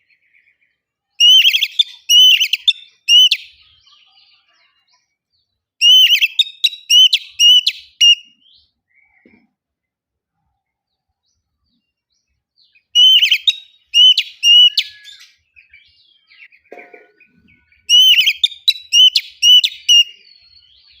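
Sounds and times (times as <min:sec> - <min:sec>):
bird singing whistled notes: 0:00.0 - 0:04.5, 0:05.8 - 0:09.2, 0:11.7 - 0:16.6, 0:17.5 - 0:21.0
soft bird chatter: 0:00.0 - 0:21.0.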